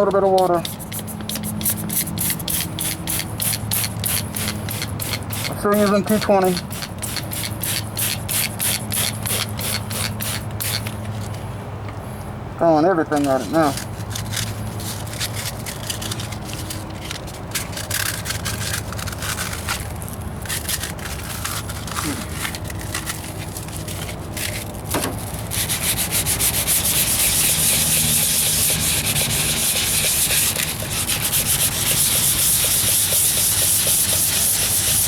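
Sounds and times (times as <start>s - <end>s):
wet sanding by hand: 0.2s - 10.8s, 25.4s - 35.0s.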